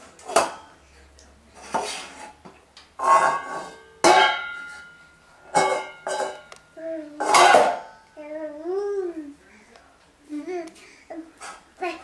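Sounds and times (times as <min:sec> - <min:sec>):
dog bowl knocking and ringing: 0:03.1 - 0:05.0.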